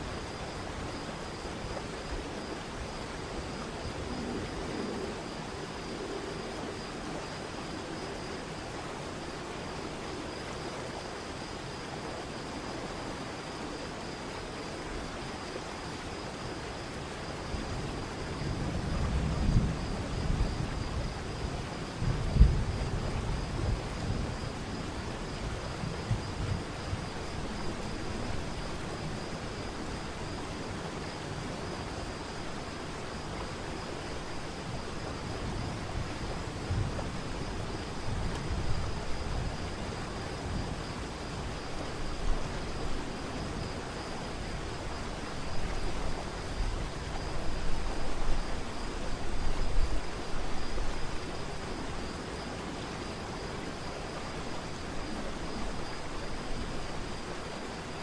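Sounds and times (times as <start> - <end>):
wind buffeting microphone: 17.6 - 30.8, 34.4 - 51.0.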